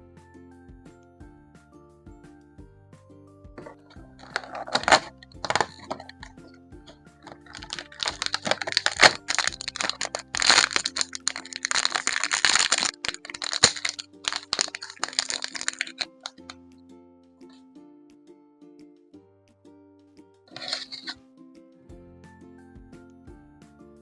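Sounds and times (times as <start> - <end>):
soft background music: 0.0 - 24.0
plastic packaging crinkling: 3.6 - 6.6, 7.2 - 16.5, 20.5 - 21.2.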